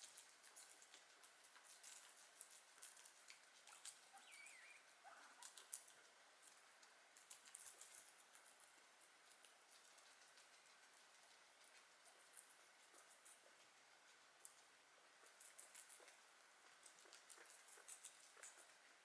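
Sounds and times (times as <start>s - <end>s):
guinea pigs chewing: 0.0s - 19.0s
faint chirp: 3.7s - 5.4s.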